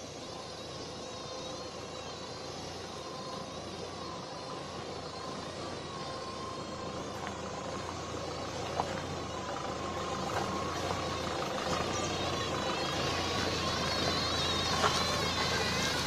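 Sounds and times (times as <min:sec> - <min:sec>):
engine droning: 0:00.0 - 0:16.0.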